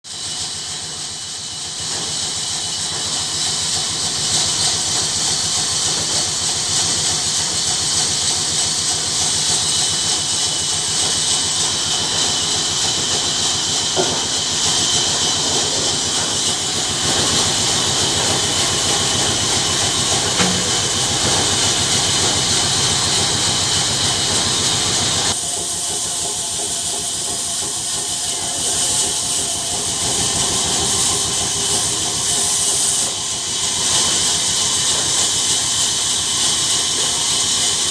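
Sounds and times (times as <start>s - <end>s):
bandsaw running: 0.2s - 37.9s.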